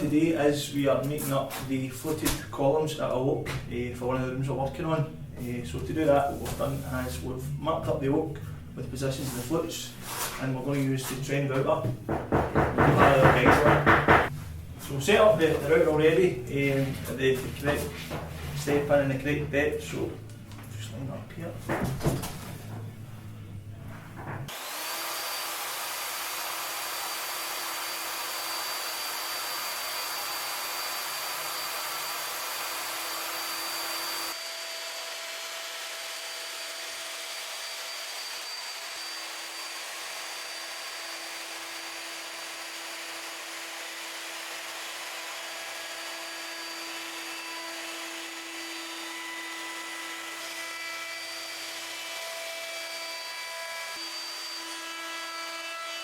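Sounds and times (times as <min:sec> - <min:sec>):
electric router whining: 0:24.5 - 0:55.4.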